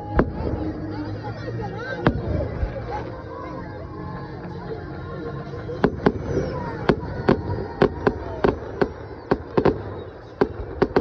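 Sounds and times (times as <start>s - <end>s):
fireworks banging: 2.0s - 3.1s, 5.8s - 11.0s.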